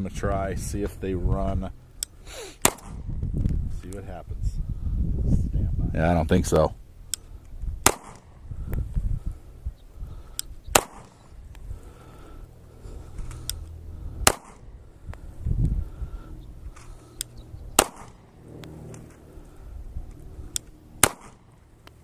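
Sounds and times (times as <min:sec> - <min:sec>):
low wind rumble: 0:00.0 - 0:22.0
pistol shots: 0:02.6 - 0:03.0, 0:07.8 - 0:08.4, 0:10.7 - 0:11.2, 0:14.2 - 0:14.7, 0:17.8 - 0:18.2, 0:21.0 - 0:21.5
faint sharp cracks: 0:10.3 - 0:11.6, 0:13.1 - 0:15.2, 0:16.7 - 0:19.2, 0:20.1 - 0:22.0.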